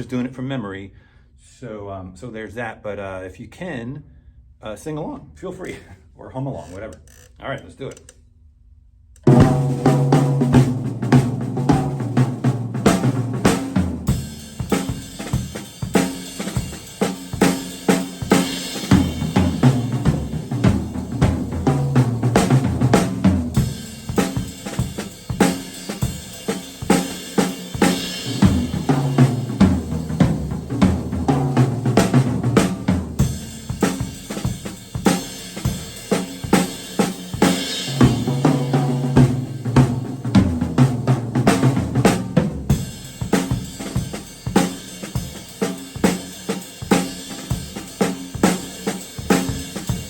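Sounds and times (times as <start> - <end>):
drum kit groove: 9.2 - 50.0
low drums ringing: 9.3 - 27.1, 27.8 - 36.1, 37.7 - 44.6.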